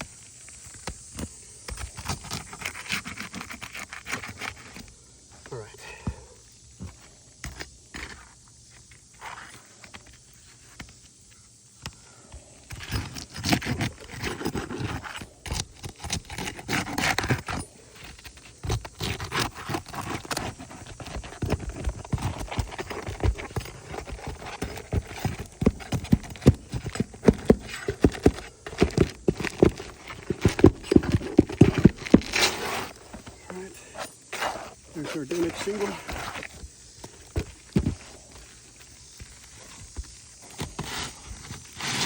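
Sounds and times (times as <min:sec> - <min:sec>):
roof shingles being pried up: 0:12.7 - 0:33.4.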